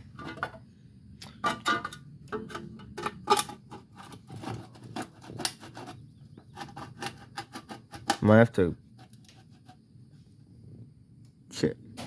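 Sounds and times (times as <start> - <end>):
metallic clicks and knocks on tin can: 1.2 - 4.2, 7.0 - 8.3.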